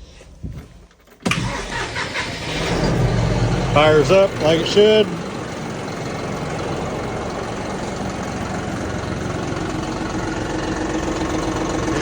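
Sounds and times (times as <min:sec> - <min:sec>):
tractor diesel engine idling: 0:00.0 - 0:12.0.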